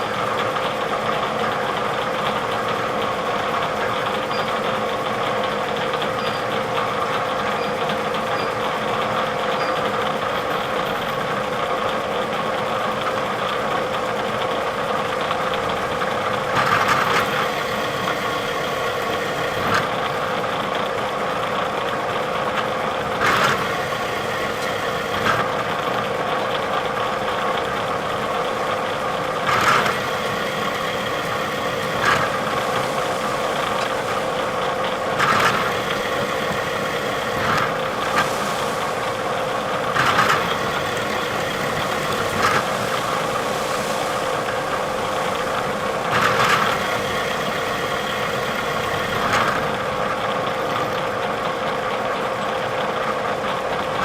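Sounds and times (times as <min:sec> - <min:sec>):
milling machine humming: 0:00.0 - 0:54.0
milling cutter louder bursts: 0:27.4 - 0:49.6.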